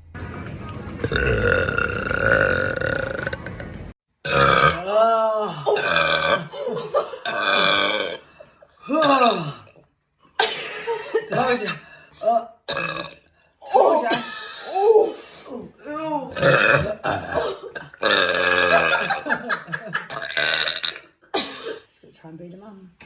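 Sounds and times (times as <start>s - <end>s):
woman burping: 1.0s - 3.5s, 4.2s - 6.5s, 7.2s - 10.5s, 12.7s - 13.3s, 16.3s - 19.3s, 20.1s - 21.9s.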